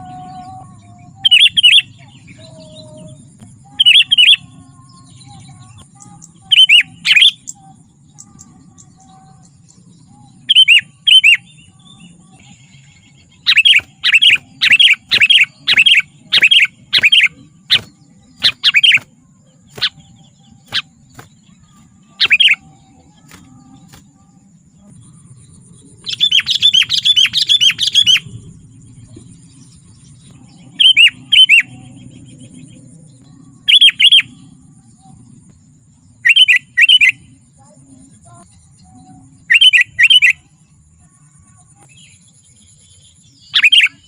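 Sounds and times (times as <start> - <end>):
faint steady hum: 0.0 - 44.0
bulbul chirping: 13.4 - 24.2, 26.1 - 28.4, 43.6 - 44.0.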